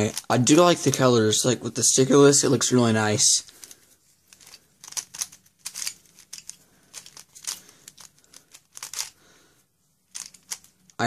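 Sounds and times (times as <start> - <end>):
plastic puzzle clicks and clacks: 0.0 - 1.1, 3.5 - 9.2, 10.1 - 11.0.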